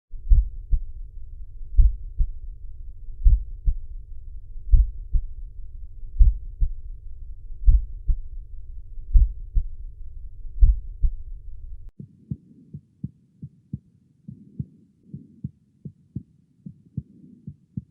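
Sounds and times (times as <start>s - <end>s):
heartbeat lub-dub: 0.2s - 1.0s, 1.7s - 2.4s, 3.2s - 3.8s, 4.7s - 5.3s, 6.2s - 6.8s, 7.6s - 8.2s, 9.1s - 9.7s, 10.6s - 11.2s.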